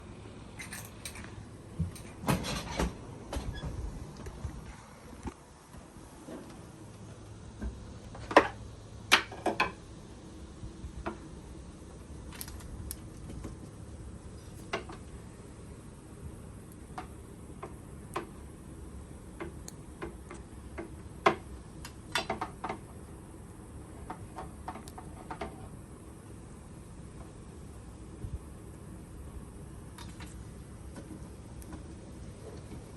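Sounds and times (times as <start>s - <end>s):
sharp clicks and light knocks: 19.4s - 23.0s, 24.0s - 25.7s.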